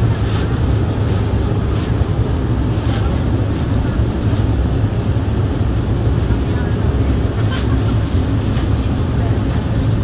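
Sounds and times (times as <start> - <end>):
airliner cabin rumble: 0.0 - 10.0.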